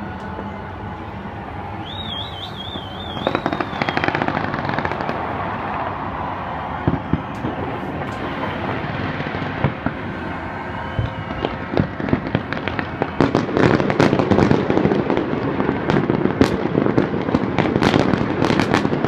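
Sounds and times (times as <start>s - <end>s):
crackling firework reports: 0.0s - 19.0s
firework bangs: 0.0s - 19.0s
firework whistle: 0.0s - 19.0s.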